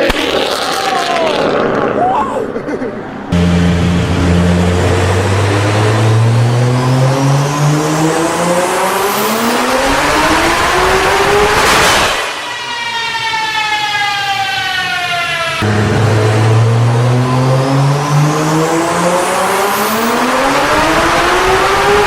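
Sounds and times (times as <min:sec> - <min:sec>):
car engine accelerating: 0:03.2 - 0:12.4, 0:15.6 - 0:22.0.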